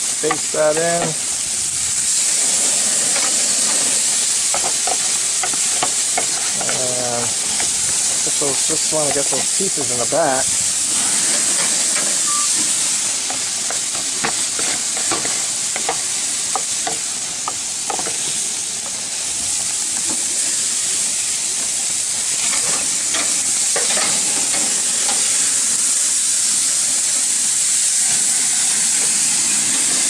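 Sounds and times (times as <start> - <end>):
chicken sizzling on a grill: 0.0 - 30.0
fat popping and crackling: 3.1 - 9.4.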